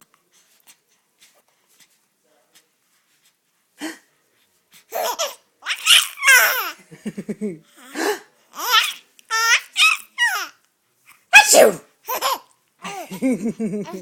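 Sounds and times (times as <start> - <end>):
baby laughing and squealing: 4.9 - 6.8, 8.5 - 10.6, 11.4 - 13.2, 13.8 - 14.0.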